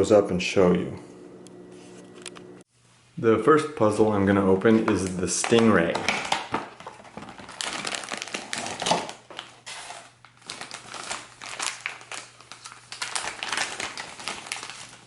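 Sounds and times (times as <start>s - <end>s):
plastic packaging crinkling: 4.8s - 15.0s.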